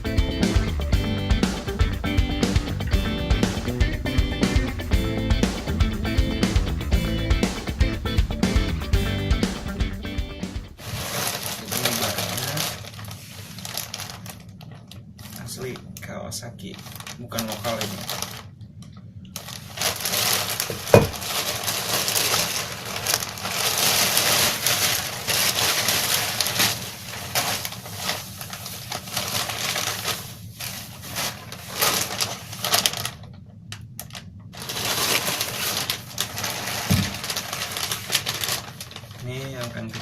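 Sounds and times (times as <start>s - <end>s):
packaging rustling and crinkling: 10.8s - 15.9s, 16.6s - 18.6s, 19.4s - 40.0s.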